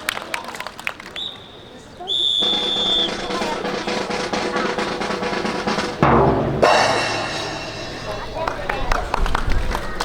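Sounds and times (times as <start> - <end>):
heavy drum hit: 2.4 - 8.5
snare drum roll: 2.4 - 8.7.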